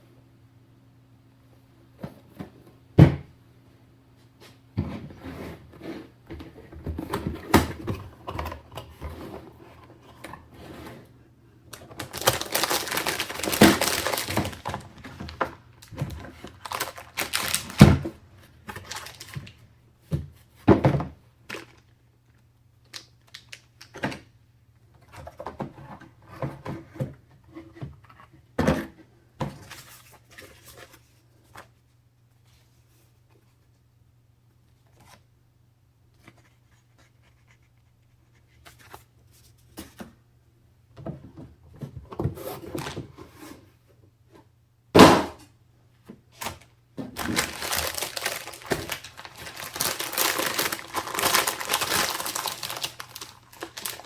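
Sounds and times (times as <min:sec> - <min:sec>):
packaging being handled: 0:11.7 - 0:18.0, 0:18.7 - 0:19.6, 0:46.4 - 0:54.0.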